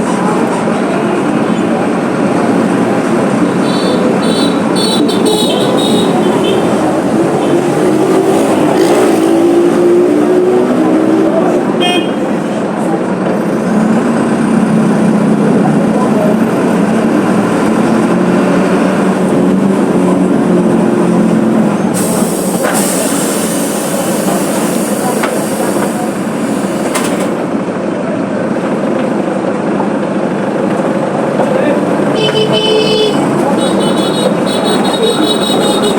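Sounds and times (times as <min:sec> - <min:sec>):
bus diesel engine running: 0:00.0 - 0:35.9
compressed air hiss: 0:22.0 - 0:25.9.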